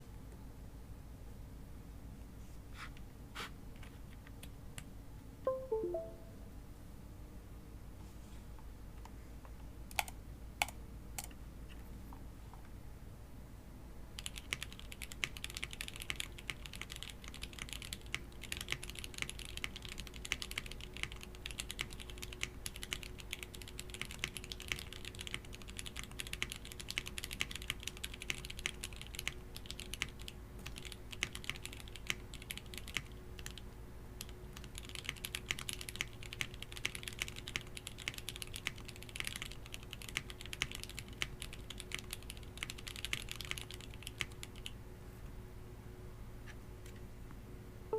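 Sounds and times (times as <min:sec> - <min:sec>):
faint steady hum: 0:00.0 - 0:47.9
fast typing on mechanical keyboard: 0:14.2 - 0:33.6, 0:34.2 - 0:44.8.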